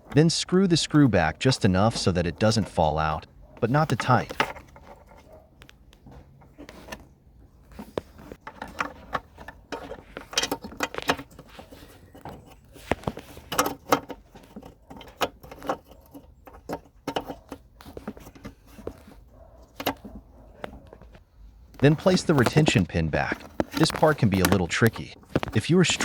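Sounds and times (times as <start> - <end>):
small parts knocking: 7.7 - 26.0.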